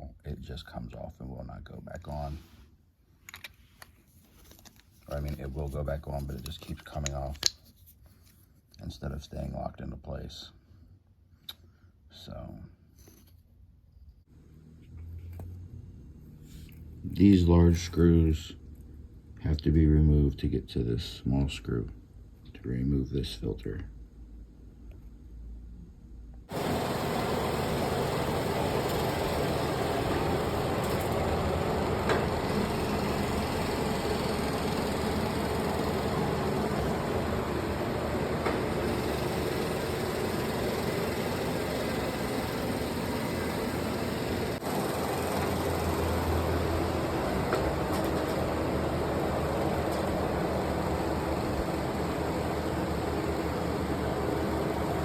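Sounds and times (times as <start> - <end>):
robot vacuum running: 26.5 - 55.0.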